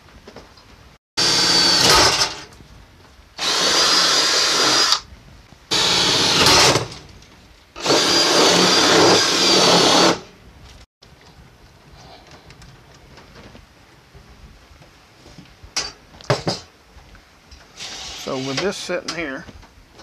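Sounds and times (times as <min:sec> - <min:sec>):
power drill boring holes: 0:01.2 - 0:02.5, 0:03.4 - 0:05.0, 0:05.7 - 0:07.0, 0:07.8 - 0:10.2.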